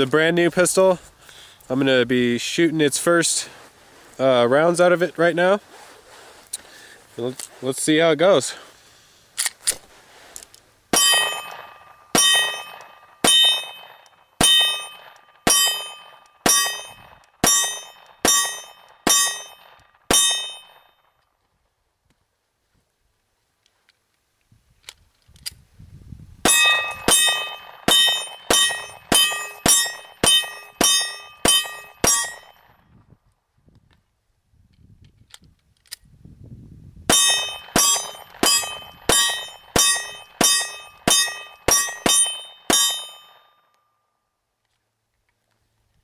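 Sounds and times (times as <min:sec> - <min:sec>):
pistol shots with metallic ring: 0:10.9 - 0:21.2, 0:26.4 - 0:32.8, 0:37.1 - 0:44.0.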